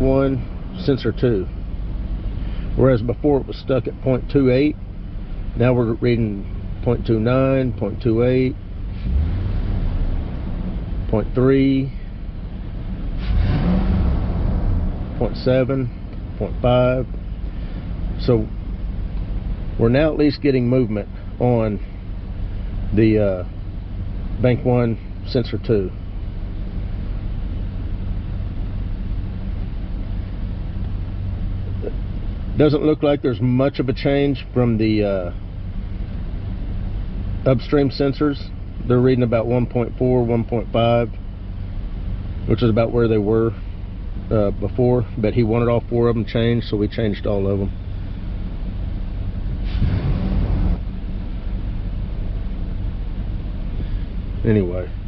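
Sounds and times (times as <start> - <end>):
engine idling: 0.0 - 55.0
rush of noise: 13.1 - 18.8, 49.4 - 52.5.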